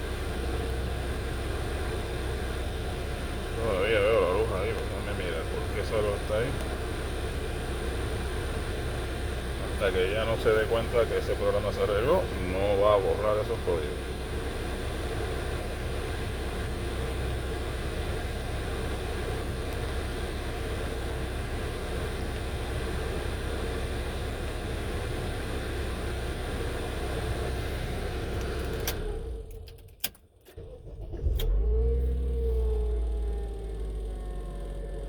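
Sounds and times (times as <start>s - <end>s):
car engine idling: 0.0s - 35.0s
engine starting: 28.6s - 32.6s.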